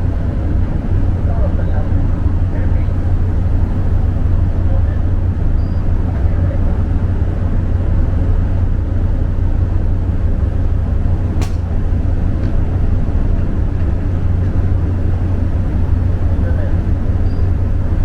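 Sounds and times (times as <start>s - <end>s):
ferry engines droning: 0.0s - 18.0s
sharp click: 11.4s - 11.7s.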